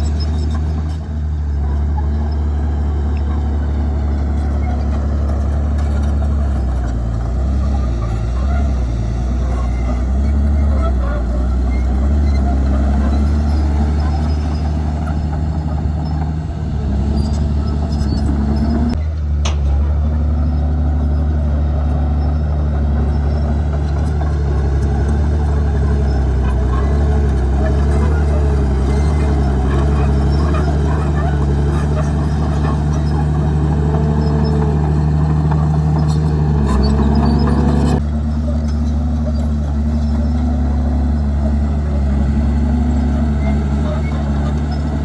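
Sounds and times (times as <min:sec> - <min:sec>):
bulldozer diesel engine running: 0:00.0 - 0:45.0
metallic squeals: 0:03.3 - 0:19.0, 0:22.2 - 0:45.0.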